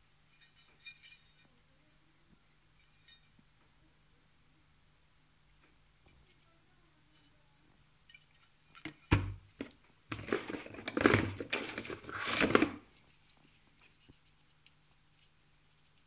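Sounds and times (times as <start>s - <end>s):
clattering of parts: 0.3s - 1.6s, 8.0s - 12.9s
packaging rustling: 10.1s - 12.9s.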